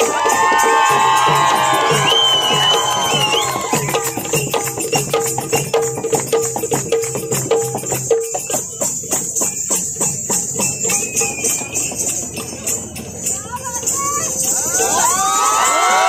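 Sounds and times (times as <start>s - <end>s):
fast hand drum rhythm: 0.0s - 14.2s.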